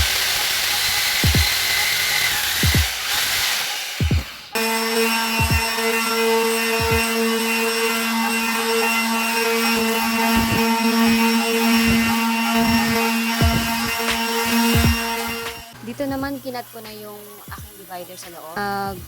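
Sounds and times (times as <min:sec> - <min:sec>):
power saw cutting plywood: 0:00.0 - 0:15.8
short low thumps: 0:11.9 - 0:13.9.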